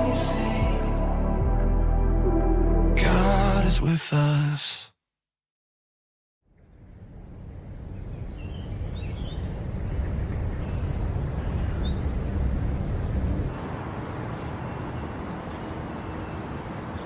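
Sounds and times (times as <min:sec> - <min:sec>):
small birds chirping: 0:07.2 - 0:17.0.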